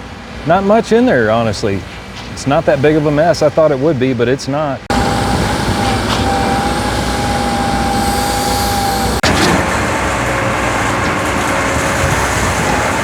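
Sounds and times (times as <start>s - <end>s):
heavy truck engine running: 4.8s - 13.0s.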